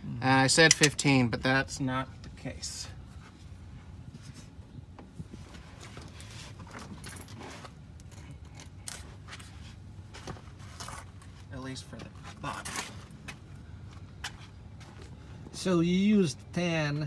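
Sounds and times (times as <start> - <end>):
metal hand tools clinking: 0.6 - 1.0.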